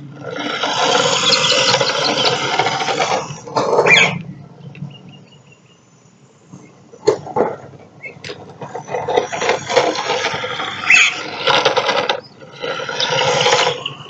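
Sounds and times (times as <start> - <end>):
toy car motor running: 0.0 - 4.2, 8.6 - 14.0.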